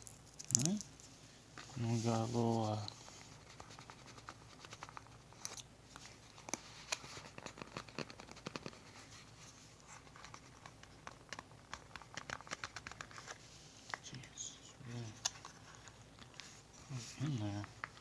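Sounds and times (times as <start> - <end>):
fingers handling cardboard packaging: 1.6 - 14.2.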